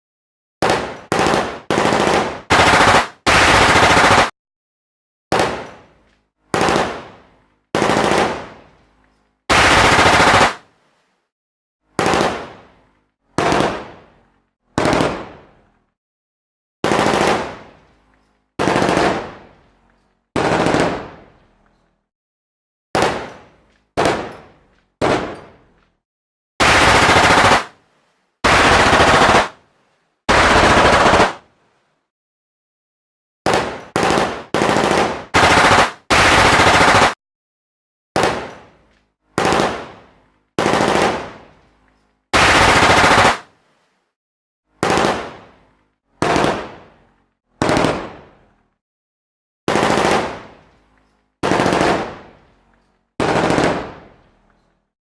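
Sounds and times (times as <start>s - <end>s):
machine-gun fire bursts: 0.6s - 4.3s, 6.5s - 8.6s, 9.5s - 10.6s, 12.0s - 12.6s, 13.4s - 14.0s, 14.8s - 15.5s, 16.8s - 17.7s, 18.6s - 19.5s, 20.4s - 21.2s, 23.0s - 23.3s, 24.0s - 24.3s, 25.0s - 25.4s, 26.6s - 27.8s, 28.4s - 29.6s, 30.3s - 31.4s, 33.5s - 37.2s, 38.2s - 38.5s, 39.4s - 40.0s, 40.6s - 41.4s, 42.4s - 43.5s, 44.8s - 45.5s, 46.2s - 46.9s, 47.6s - 48.3s, 49.7s - 50.6s, 51.4s - 52.3s, 53.2s - 54.2s.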